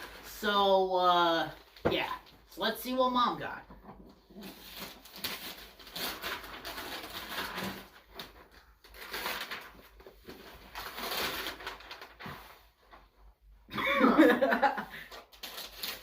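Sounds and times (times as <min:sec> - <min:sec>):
wrapping paper tearing and crinkling: 0:00.0 - 0:00.5, 0:04.3 - 0:13.0, 0:15.0 - 0:16.0.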